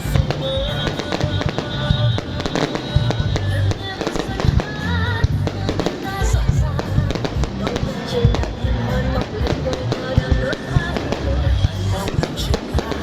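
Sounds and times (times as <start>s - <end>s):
fireworks bangs: 0.0s - 13.0s
loud music: 0.0s - 13.0s.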